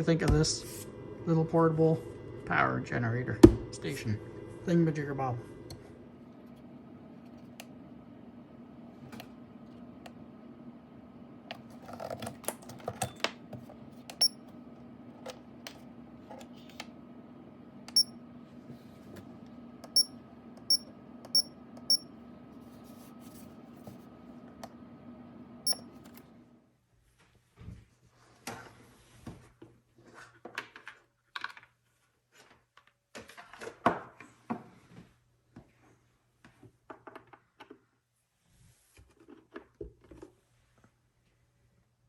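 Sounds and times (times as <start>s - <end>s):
electrical hum: 0.0s - 26.6s.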